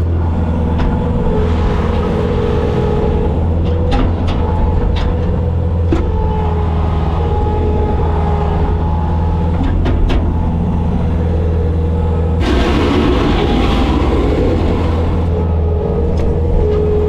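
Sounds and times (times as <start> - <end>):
diesel engine running: 0.0 - 17.0
loud harsh noise: 12.4 - 15.6.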